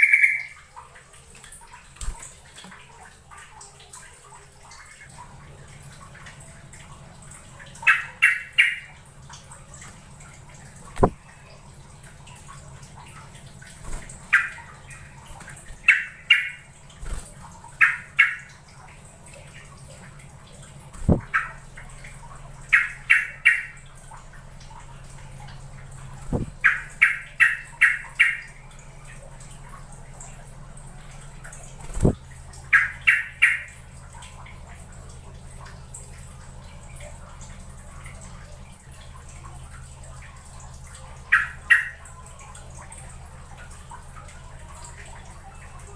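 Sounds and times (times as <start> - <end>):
bird calling in quick notes: 0.0 - 0.6
low steady hum: 0.0 - 45.9.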